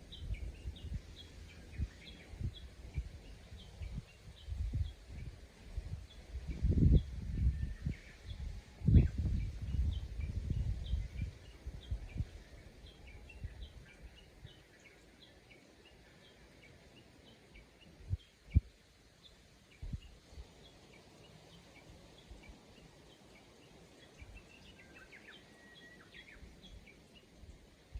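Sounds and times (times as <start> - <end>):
small birds chirping: 0.0 - 27.9.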